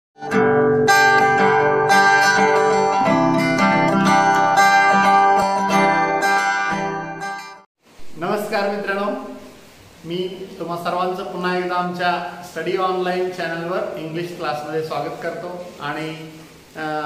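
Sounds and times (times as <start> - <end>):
plucked acoustic guitar music: 0.2 - 7.6.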